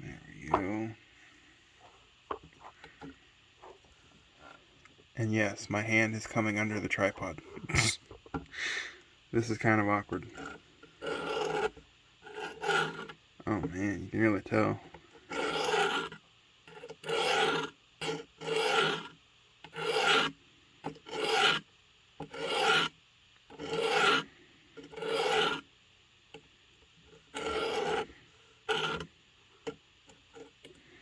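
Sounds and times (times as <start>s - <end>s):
knife rasping on sharpener: 10.4s - 13.2s, 15.3s - 20.4s, 21.0s - 21.6s, 22.2s - 22.9s, 23.5s - 25.6s, 27.4s - 29.1s.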